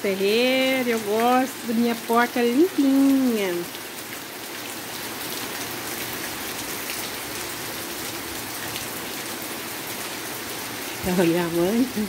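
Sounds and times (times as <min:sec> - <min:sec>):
light rain pattering: 0:00.0 - 0:12.0.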